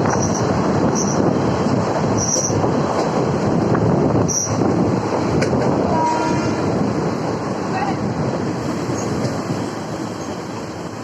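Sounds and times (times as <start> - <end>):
train carriages rumbling on track: 0.0 - 11.0.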